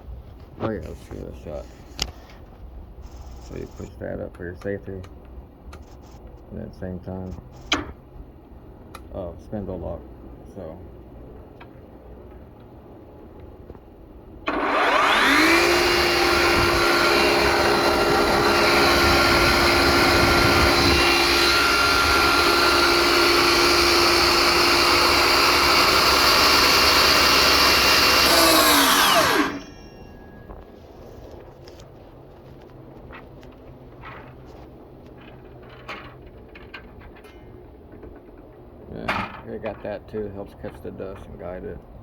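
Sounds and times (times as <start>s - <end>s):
miter saw motor whine: 14.4s - 31.4s.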